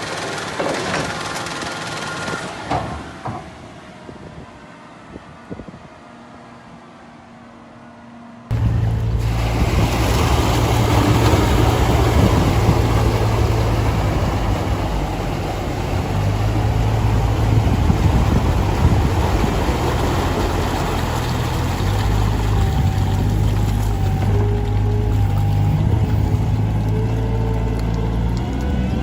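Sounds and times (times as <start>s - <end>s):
loud engine running: 0.0s - 2.9s, 8.5s - 29.0s
dense rushing noise: 8.5s - 22.1s.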